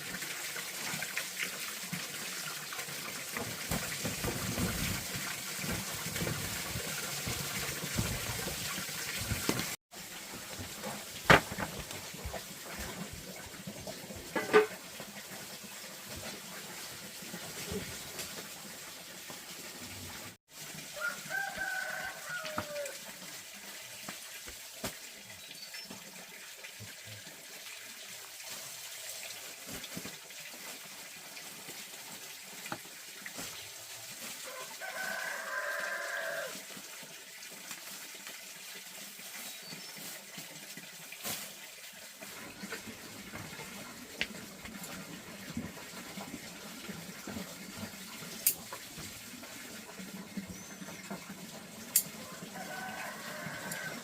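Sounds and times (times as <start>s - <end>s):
rooster crowing: 21.0s - 23.0s, 34.4s - 36.6s, 52.5s - 54.0s.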